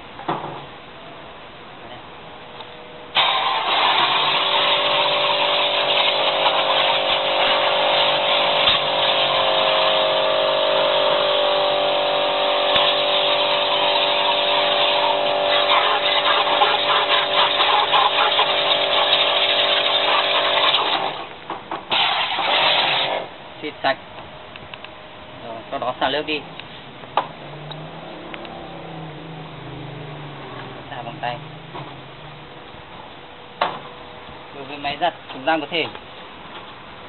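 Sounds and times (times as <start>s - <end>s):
pressure washer motor hum: 3.1s - 23.4s
water spray hissing: 3.2s - 21.3s, 21.9s - 23.3s.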